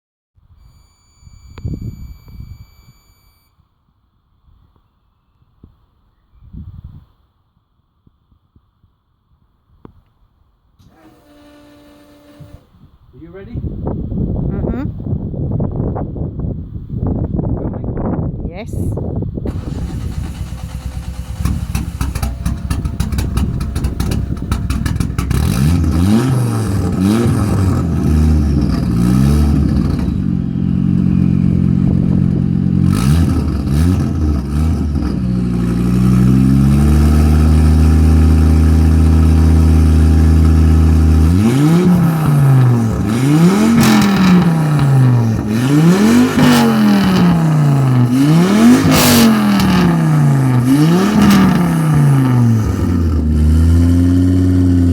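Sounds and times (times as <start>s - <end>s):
car engine idling and revving: 19.4s - 54.9s.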